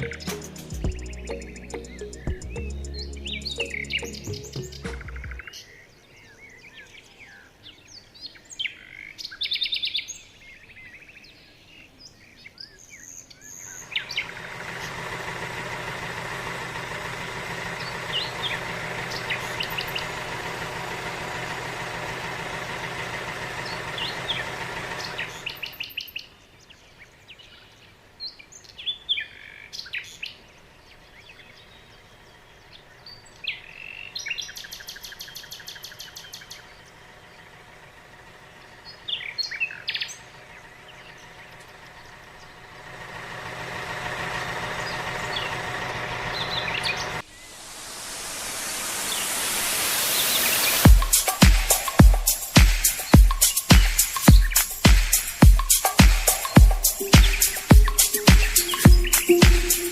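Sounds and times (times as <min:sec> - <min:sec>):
birds chirping: 0:00.0 - 0:59.9
rushing noise with low hum: 0:46.4 - 0:57.9.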